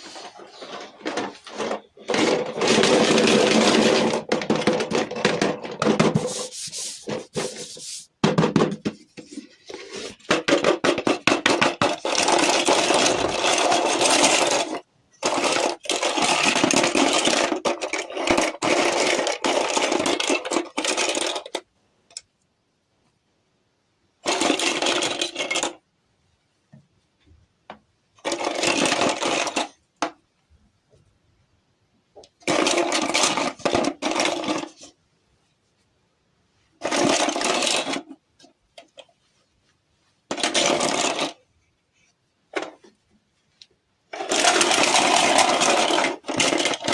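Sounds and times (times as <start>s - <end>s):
small objects rubbing and scraping: 0.0s - 8.2s, 9.2s - 10.3s, 40.2s - 43.0s, 44.1s - 46.9s.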